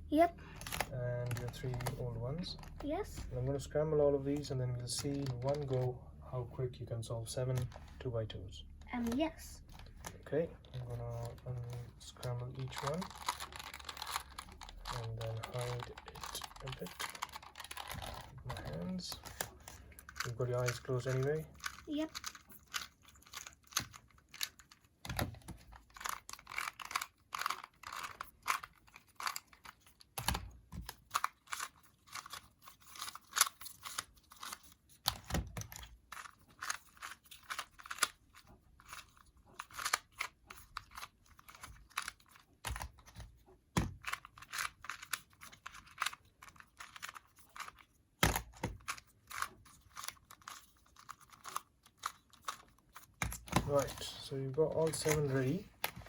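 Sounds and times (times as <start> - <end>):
puzzle cube clicking: 0.5 - 3.0, 4.9 - 5.9, 8.8 - 56.0.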